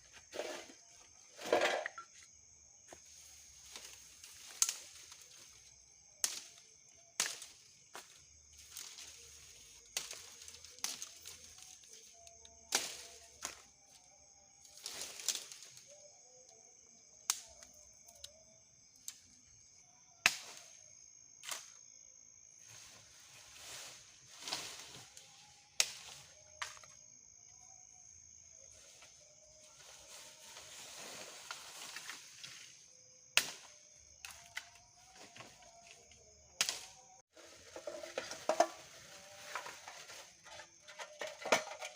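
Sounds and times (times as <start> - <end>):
dry sticks snapping: 4.4 - 5.1, 6.2 - 6.6, 7.2 - 7.6, 9.9 - 11.4, 12.7 - 13.6, 17.3 - 18.4, 36.6 - 36.9.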